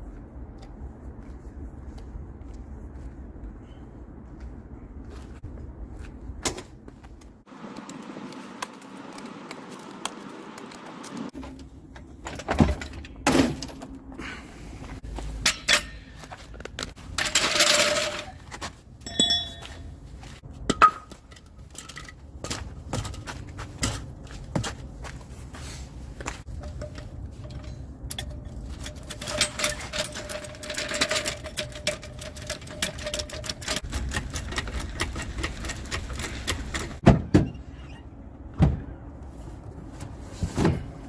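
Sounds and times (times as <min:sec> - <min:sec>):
metal tools clinking: 0:15.3 - 0:20.0, 0:26.5 - 0:37.0.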